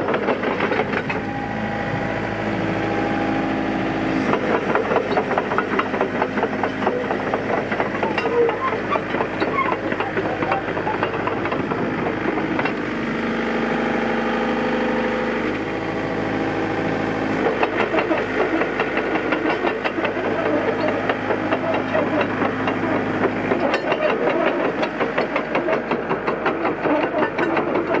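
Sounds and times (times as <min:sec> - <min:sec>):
excavator diesel engine running: 0:00.0 - 0:28.0
steady whine: 0:00.5 - 0:15.0.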